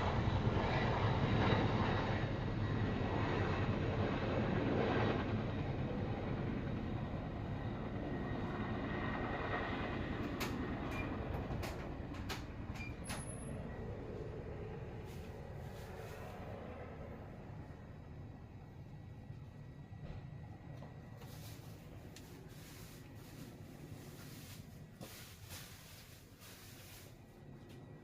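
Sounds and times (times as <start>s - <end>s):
passing vehicle rumble: 9.6s - 18.9s.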